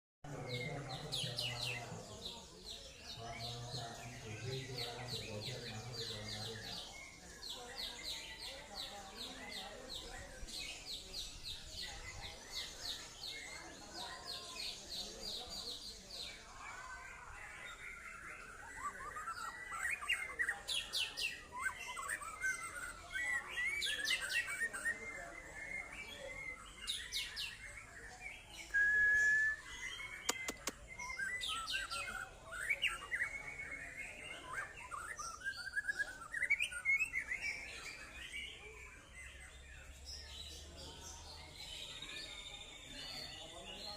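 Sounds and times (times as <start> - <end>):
bird singing whistles and trills: 17.7 - 40.6
sharp clicks: 30.2 - 30.8.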